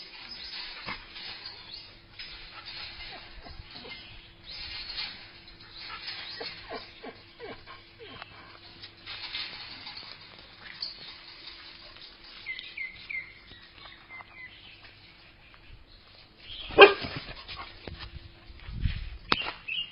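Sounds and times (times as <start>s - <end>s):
dog barking: 16.7s - 17.1s.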